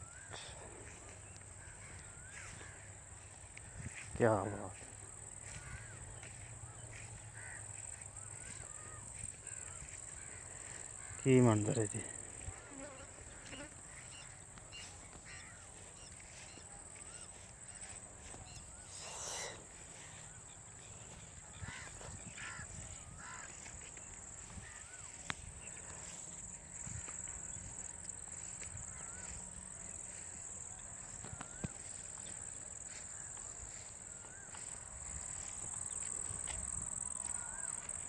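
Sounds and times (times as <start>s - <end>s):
birds chirping: 0.0s - 38.0s.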